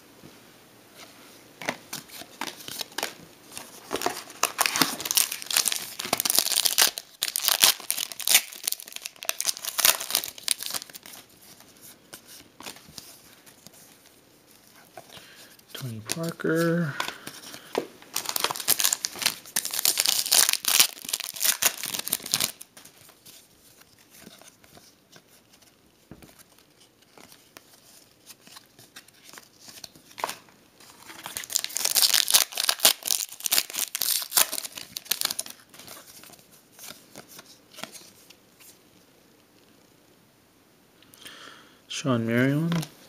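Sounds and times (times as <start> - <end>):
card pack wrapper tearing: 1.9 - 11.3, 15.9 - 22.7, 31.0 - 36.2
wrapper rustling: 1.9 - 25.7, 26.3 - 38.8.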